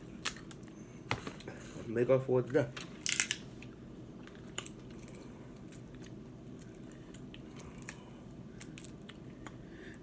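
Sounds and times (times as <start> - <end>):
chewing and picking at seafood: 4.1 - 10.0.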